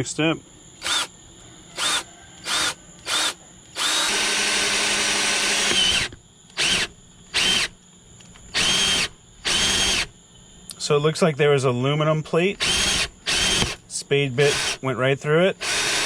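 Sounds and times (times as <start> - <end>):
power drill boring: 0.8 - 1.1, 1.8 - 7.8, 8.5 - 10.1, 12.6 - 13.8, 14.4 - 14.8, 15.6 - 16.0.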